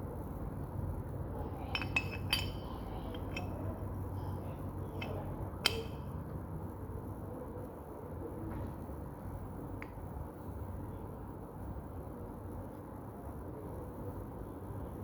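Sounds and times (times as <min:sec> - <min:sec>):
steady low hum: 0:00.0 - 0:15.0
small hard objects clinking: 0:01.8 - 0:03.6.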